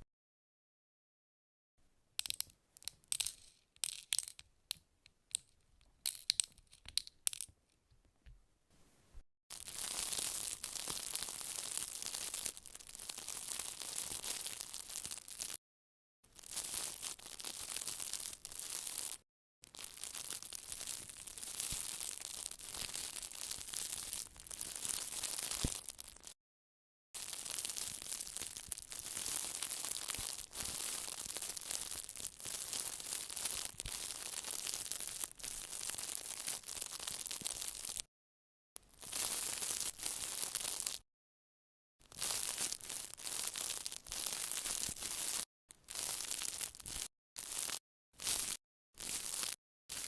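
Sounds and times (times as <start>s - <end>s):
crisp crackles and clicks: 9.5s - 15.6s, 16.3s - 26.4s, 27.2s - 38.1s, 38.8s - 41.0s, 42.0s - 50.0s.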